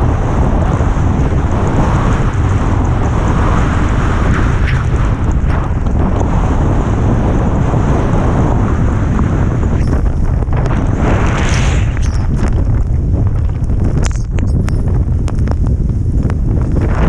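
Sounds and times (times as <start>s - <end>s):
wind buffeting microphone: 0.0s - 17.0s
skis scraping across snow: 7.8s - 13.8s.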